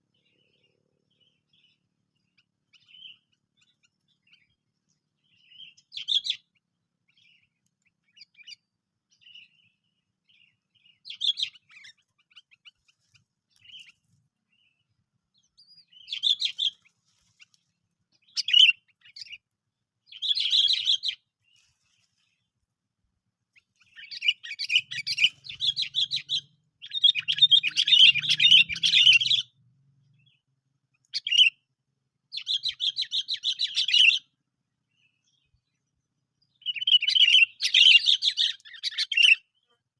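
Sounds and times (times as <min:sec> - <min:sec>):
bulbul chirping and chattering: 0:23.6 - 0:29.6.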